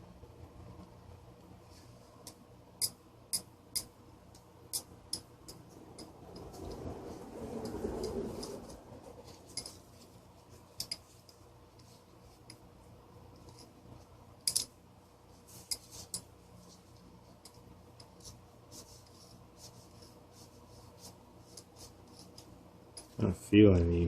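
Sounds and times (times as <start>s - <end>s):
faint steady hum: 0.0s - 24.0s
screwdriver tapping metal parts: 14.4s - 14.7s.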